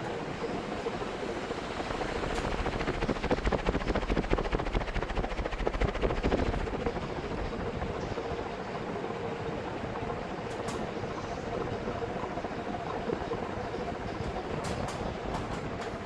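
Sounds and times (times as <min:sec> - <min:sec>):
fan blades beating: 0:00.0 - 0:09.0
ceiling fan motor hum: 0:00.0 - 0:16.0.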